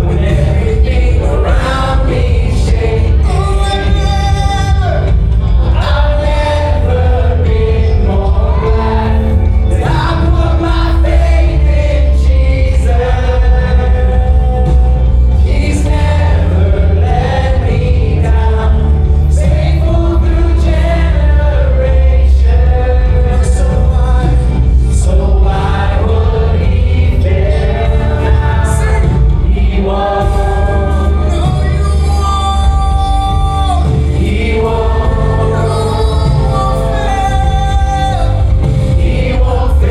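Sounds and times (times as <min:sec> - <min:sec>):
band and congregation singing: 0:00.0 - 0:39.9
heavy bass: 0:00.0 - 0:39.9.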